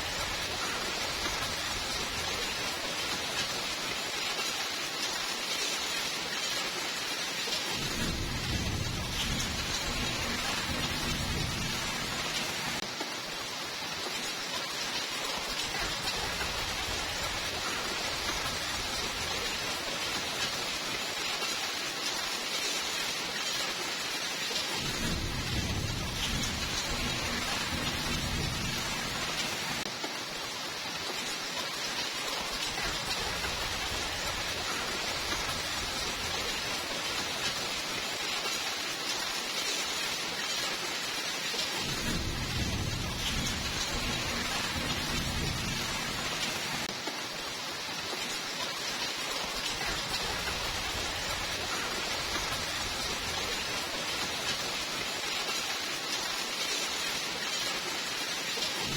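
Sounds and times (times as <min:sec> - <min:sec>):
heavy rain: 0:00.0 - 0:58.9
thunder rumbling: 0:07.8 - 0:12.8, 0:24.8 - 0:29.8, 0:41.8 - 0:46.9.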